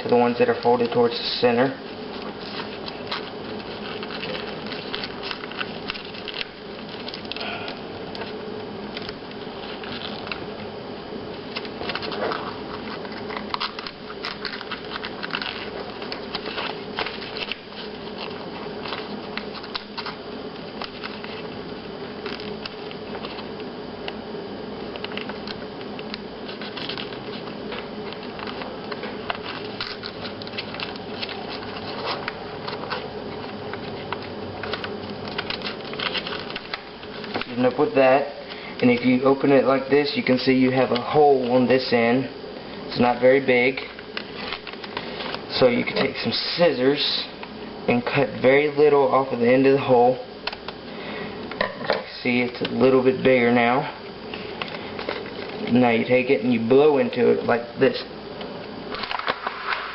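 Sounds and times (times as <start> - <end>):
paper rustling and crackling: 0.0 - 10.7, 11.3 - 23.7, 24.8 - 39.4, 42.9 - 46.4, 54.3 - 55.9
steady low hum: 0.0 - 59.9.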